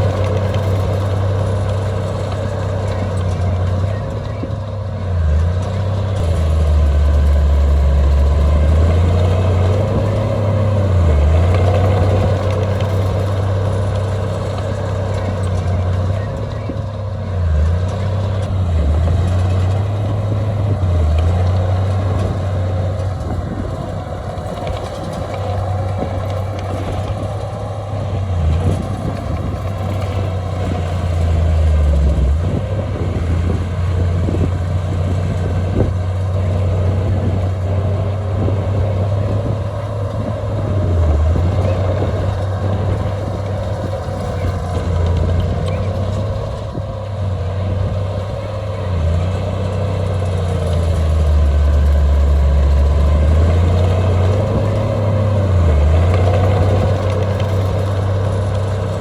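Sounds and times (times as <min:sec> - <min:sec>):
heavy diesel machinery engine: 0:00.0 - 0:59.0.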